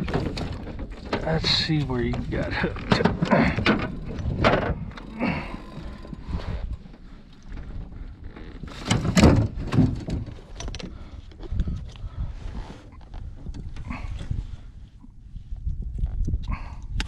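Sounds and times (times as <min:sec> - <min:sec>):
thumps and clatter on boat: 0:00.0 - 0:11.9
low wind rumble: 0:00.0 - 0:17.0.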